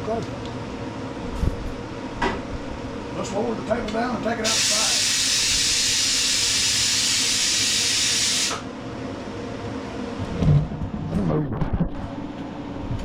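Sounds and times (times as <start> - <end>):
compressed air hissing: 4.4 - 8.7.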